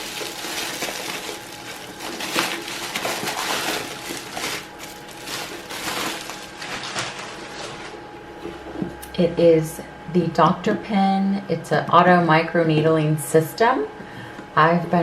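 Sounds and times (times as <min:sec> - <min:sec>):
bubble wrap crinkling: 0:00.0 - 0:08.0.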